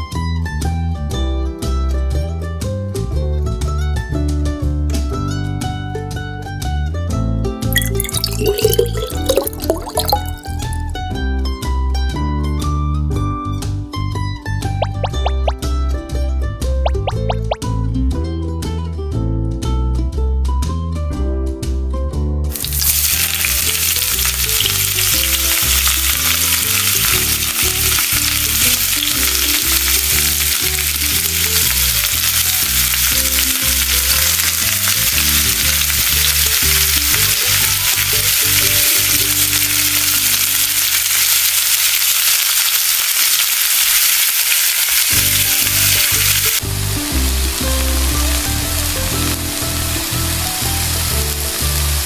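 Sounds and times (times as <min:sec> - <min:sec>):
fritters deep-frying in oil: 0:22.5 - 0:52.0.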